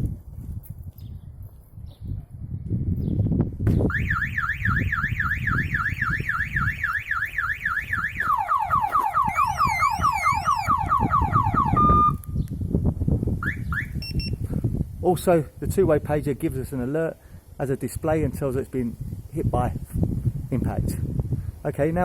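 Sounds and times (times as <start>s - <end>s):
vehicle alarm siren warbling: 3.9s - 12.3s, 13.4s - 14.4s.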